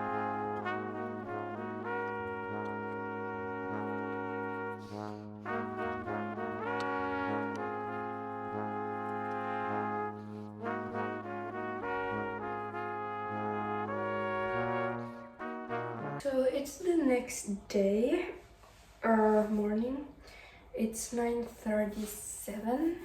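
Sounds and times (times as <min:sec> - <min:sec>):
brass instruments playing chords: 0:00.0 - 0:16.2.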